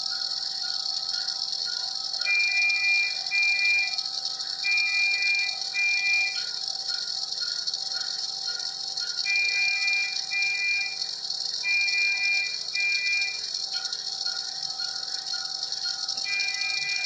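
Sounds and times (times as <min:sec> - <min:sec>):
patient monitor alarm beeping: 0:02.3 - 0:04.0, 0:04.7 - 0:06.5, 0:09.3 - 0:11.0, 0:11.6 - 0:13.5, 0:16.2 - 0:17.0.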